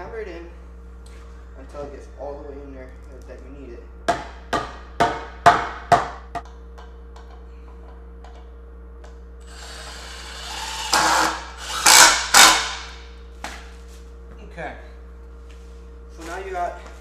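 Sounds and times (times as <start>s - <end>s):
loud bursts: 9.5s - 13.0s.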